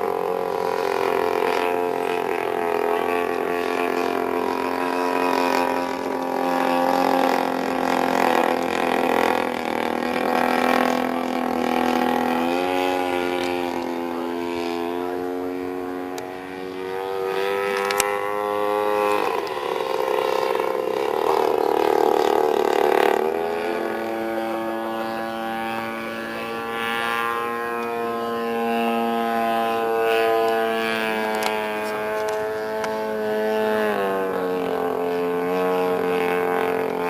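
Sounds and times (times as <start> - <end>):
model plane gasoline engine running: 0.0 - 37.0.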